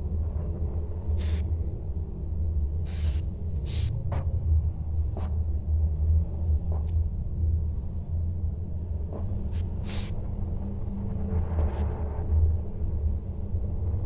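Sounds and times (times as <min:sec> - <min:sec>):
steady low hum: 0:00.0 - 0:14.0
short hissing breaths: 0:02.9 - 0:03.9.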